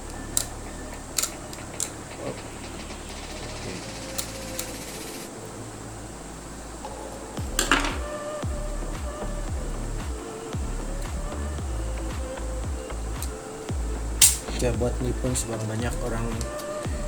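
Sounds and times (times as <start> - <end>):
steady low hum: 0.0 - 17.0
screws and screwdriver clicking: 0.1 - 2.1, 3.9 - 5.2.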